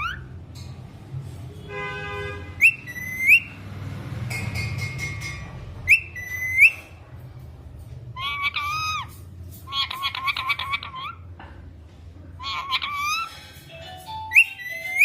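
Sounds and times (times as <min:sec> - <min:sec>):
parrot whistling: 0:00.0 - 0:00.3, 0:02.6 - 0:03.6, 0:05.8 - 0:06.9, 0:14.1 - 0:15.0.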